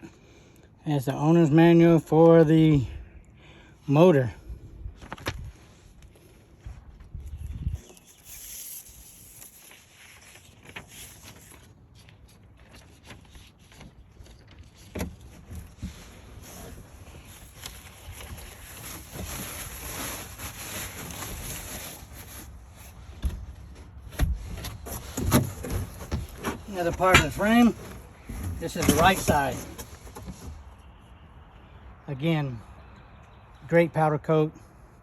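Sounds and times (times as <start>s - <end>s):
cardboard rustling: 7.8s - 30.7s.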